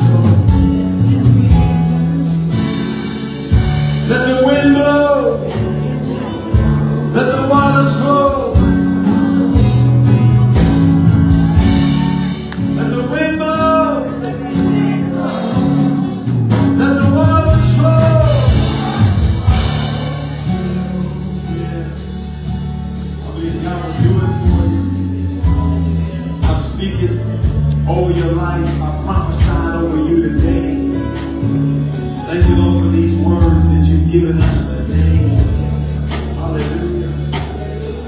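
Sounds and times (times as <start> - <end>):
person singing: 0.0 - 22.4
keyboard chords: 0.0 - 38.0.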